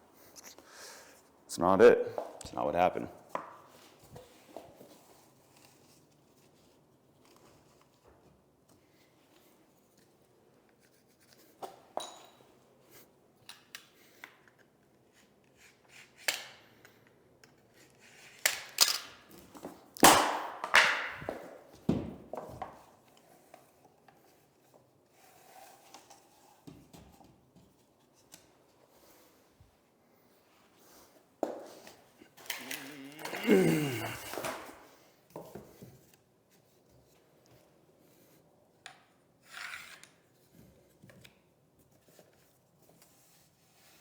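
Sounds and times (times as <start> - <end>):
floor planks knocking and clicking: 19.5 - 22.8.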